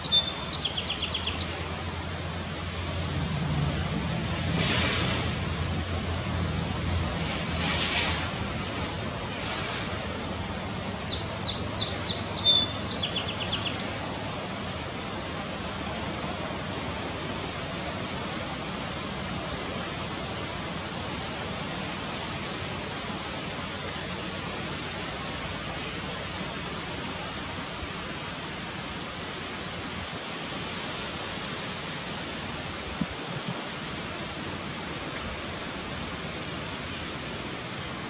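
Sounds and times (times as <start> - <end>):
bird chirping: 0.0 - 1.6, 11.0 - 14.0
steady outdoor hiss: 0.0 - 38.0.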